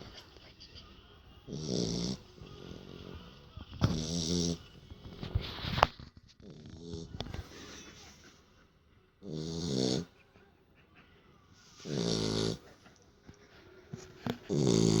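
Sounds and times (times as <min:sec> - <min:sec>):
dog snoring: 0:01.5 - 0:05.2, 0:06.4 - 0:07.2, 0:09.2 - 0:10.2, 0:11.7 - 0:12.8, 0:14.0 - 0:15.0.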